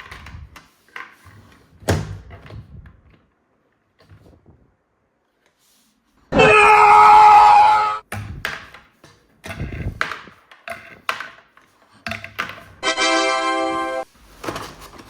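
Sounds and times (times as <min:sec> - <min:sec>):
toys clicking and knocking: 0:08.1 - 0:12.8.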